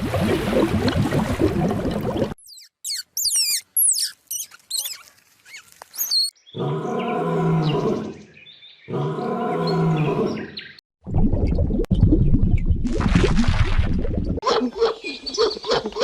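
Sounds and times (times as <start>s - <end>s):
bird chirping and whistling: 2.4s - 6.3s.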